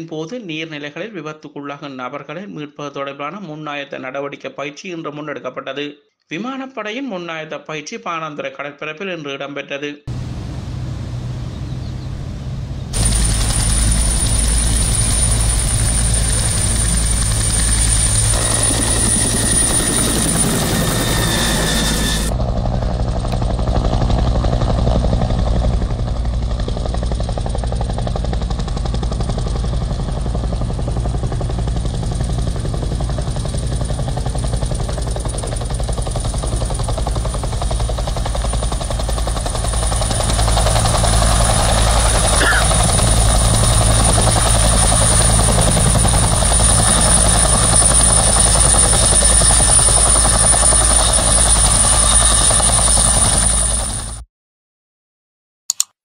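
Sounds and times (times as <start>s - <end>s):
turbine whine: 10.1s - 28.4s, 29.1s - 54.2s
helicopter rotor beat: 10.1s - 54.2s.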